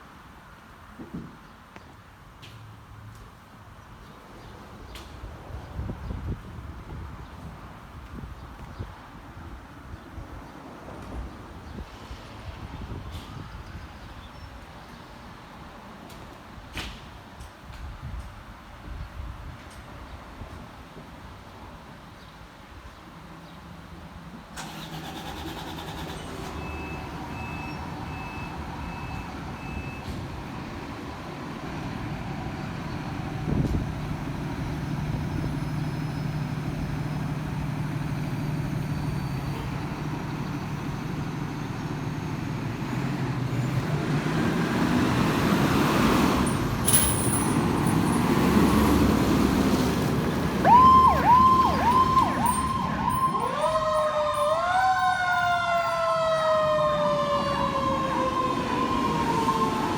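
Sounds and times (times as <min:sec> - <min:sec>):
fire engine engine running: 0:24.6 - 0:59.9
siren rising sweeps: 0:50.2 - 0:59.9.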